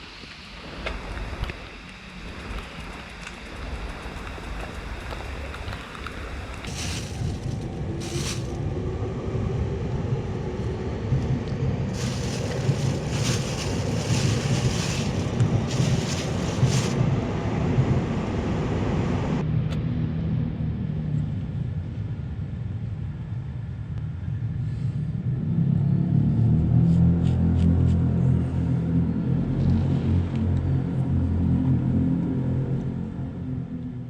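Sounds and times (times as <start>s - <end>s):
hiss of road spray and rain: 0.0s - 8.5s
wind buffeting microphone: 2.3s - 18.4s.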